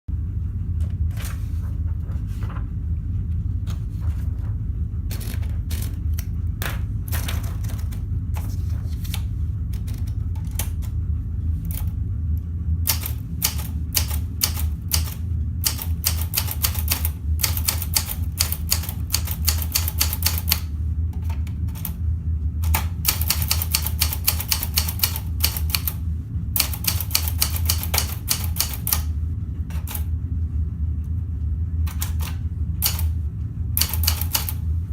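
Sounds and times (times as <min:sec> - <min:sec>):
steady low hum: 0:00.1 - 0:34.9
manual typewriter typing: 0:05.1 - 0:06.1, 0:09.8 - 0:10.9, 0:12.9 - 0:20.7, 0:21.3 - 0:22.0, 0:22.6 - 0:26.0, 0:26.6 - 0:29.1, 0:31.9 - 0:33.1, 0:33.8 - 0:34.6.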